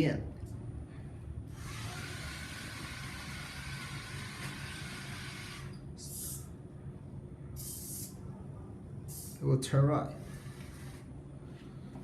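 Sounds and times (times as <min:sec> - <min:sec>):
electric motors whirring: 0:01.5 - 0:06.3, 0:10.2 - 0:11.2.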